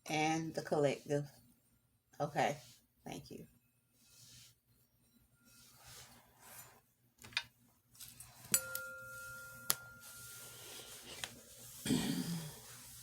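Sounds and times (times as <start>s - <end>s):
small bell-like chime: 8.5s - 10.9s.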